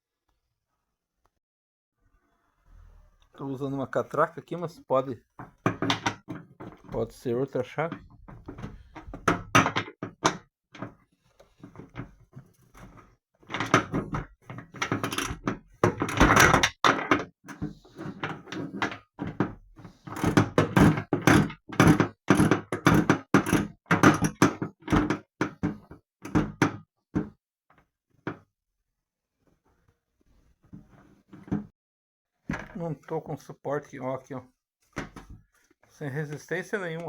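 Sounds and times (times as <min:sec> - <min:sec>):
metal fittings knocking: 0:05.4 - 0:07.2.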